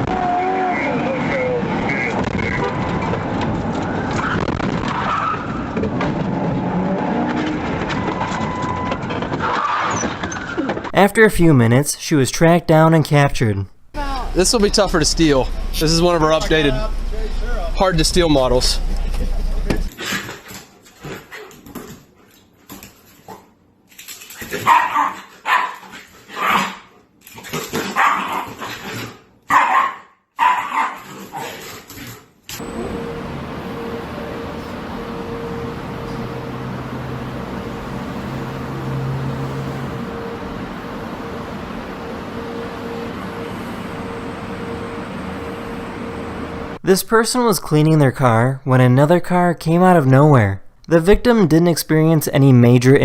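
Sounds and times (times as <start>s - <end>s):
car engine revving: 14.0s - 19.9s, 32.6s - 46.8s
dog barking: 24.6s - 26.9s, 27.9s - 28.6s, 29.5s - 31.5s.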